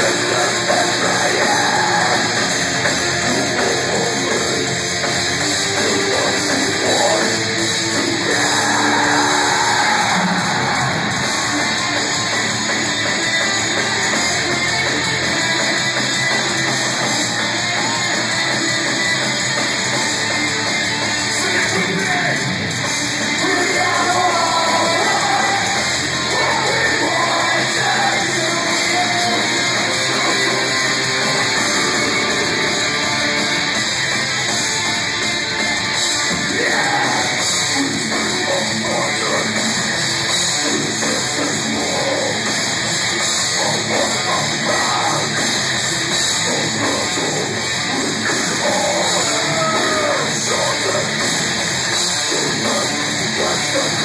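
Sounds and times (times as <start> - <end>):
distorted electric guitars: 0.0 - 54.0
drum kit: 0.0 - 54.0.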